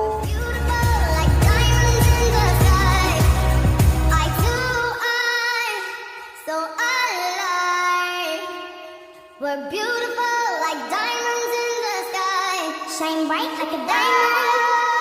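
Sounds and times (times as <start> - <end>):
light backing music: 0.0 - 4.8
bass and beat: 0.0 - 4.9
high female singing voice: 0.0 - 15.0.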